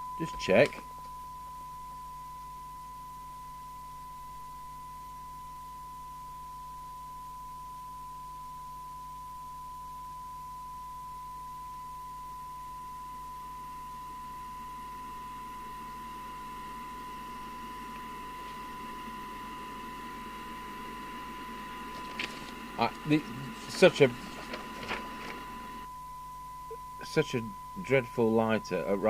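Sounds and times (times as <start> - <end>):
buzzy distortion: 0.0 - 1.0, 13.8 - 29.0.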